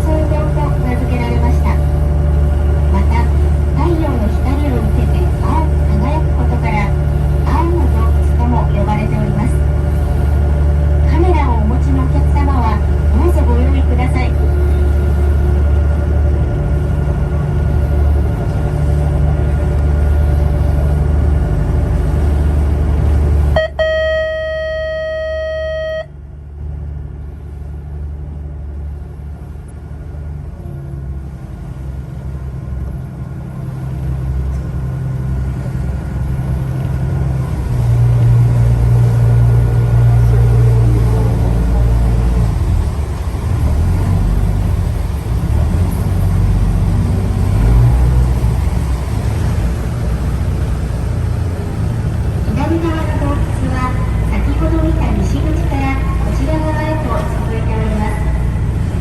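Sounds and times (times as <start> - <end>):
engine rumbling: 0.0 - 59.0
horn-like tone: 23.5 - 26.2.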